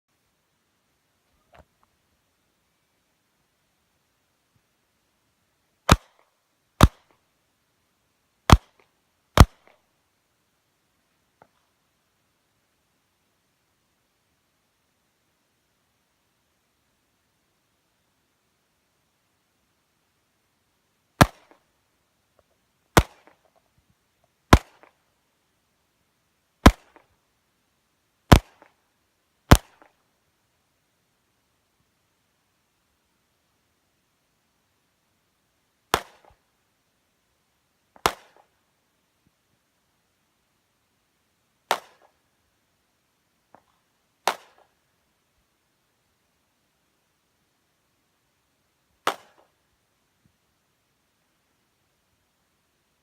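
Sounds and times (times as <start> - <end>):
pistol shots: 5.9 - 6.2, 6.8 - 7.1, 9.4 - 9.7, 26.6 - 27.0, 29.5 - 29.9, 44.3 - 44.6.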